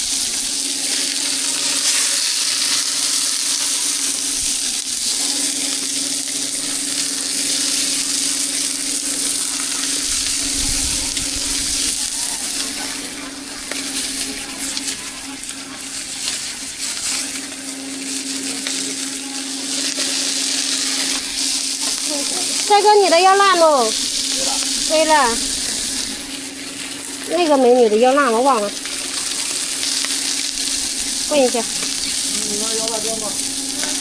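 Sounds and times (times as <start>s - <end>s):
food sizzling in hot oil: 0.0s - 34.0s
steady low hum: 3.2s - 34.0s.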